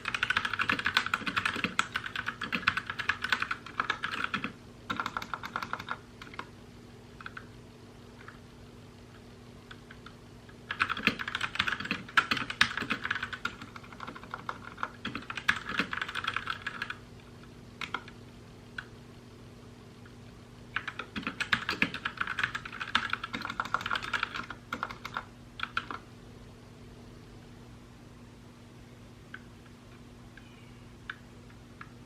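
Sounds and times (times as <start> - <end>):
mechanical keyboard typing: 0.0 - 6.5, 7.2 - 7.5, 10.7 - 17.0, 17.8 - 18.2, 20.8 - 26.0
faint steady hum: 0.0 - 32.0.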